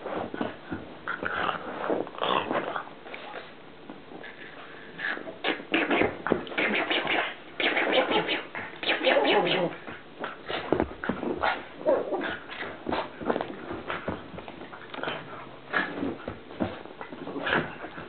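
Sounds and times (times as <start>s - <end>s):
dog making strange noises: 5.1s - 9.9s.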